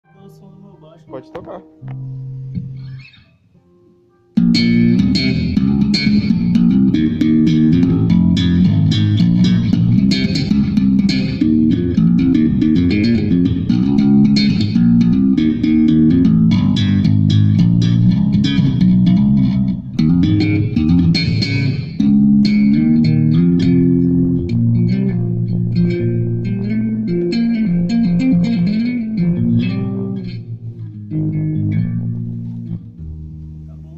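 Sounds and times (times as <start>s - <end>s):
plucked string notes: 0.0s - 33.9s.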